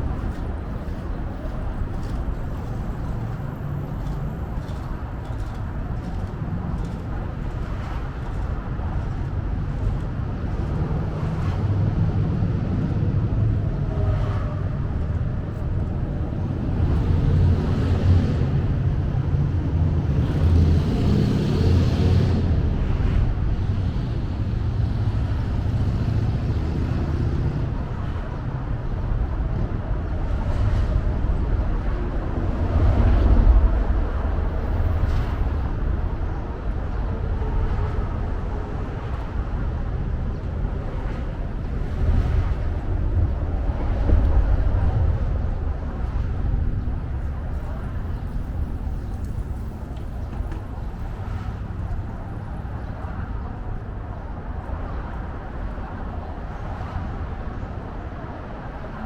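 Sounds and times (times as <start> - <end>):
city road traffic rumble: 0.0 - 59.0.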